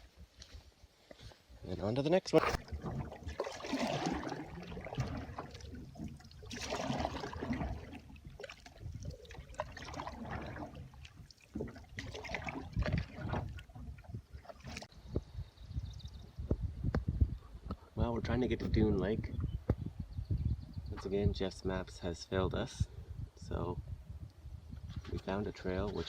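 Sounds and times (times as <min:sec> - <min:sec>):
paddle strokes swishing through water: 0:02.4 - 0:14.9
water drips and splashes: 0:02.6 - 0:14.9.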